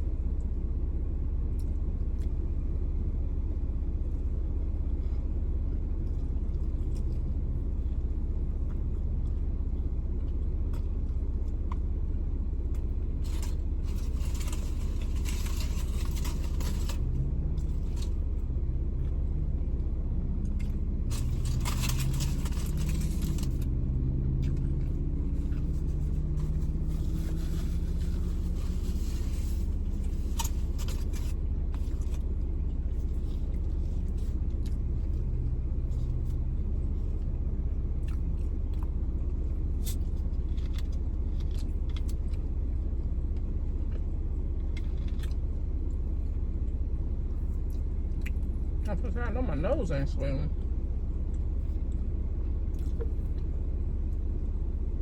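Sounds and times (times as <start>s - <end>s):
vehicle engine rumble: 0.0s - 55.0s.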